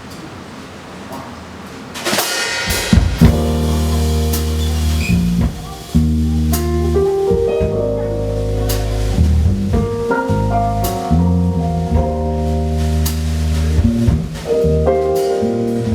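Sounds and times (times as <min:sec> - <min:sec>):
cymbal crash: 0:02.0 - 0:07.4
drums playing: 0:02.0 - 0:15.9
sustained low chords: 0:03.2 - 0:15.0.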